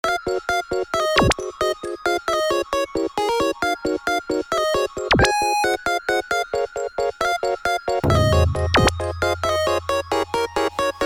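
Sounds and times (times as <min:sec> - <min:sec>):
synth sweep: 0:08.0 - 0:10.8
upbeat electronic music: 0:08.0 - 0:11.0.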